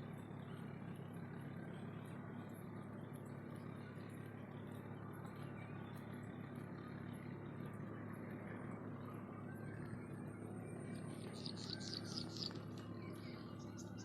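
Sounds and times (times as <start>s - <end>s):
low hum: 0.0s - 14.0s
outdoor background rumble: 0.0s - 14.0s
high bird chirps: 11.4s - 12.6s.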